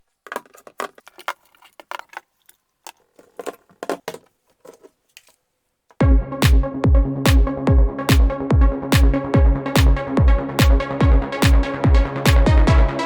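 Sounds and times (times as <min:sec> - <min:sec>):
small hard parts clicking: 0:00.0 - 0:05.4.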